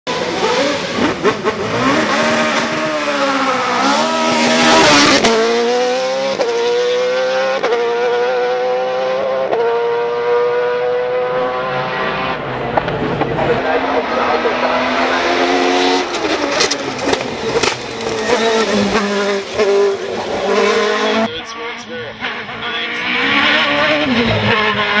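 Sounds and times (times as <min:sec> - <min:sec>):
racing car engine revving: 0:00.1 - 0:25.0
gear changes: 0:12.3 - 0:21.4.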